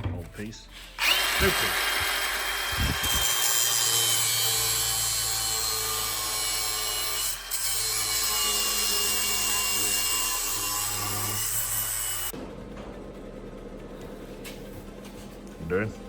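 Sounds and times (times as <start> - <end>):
power tool whining on metal: 1.0 - 12.3.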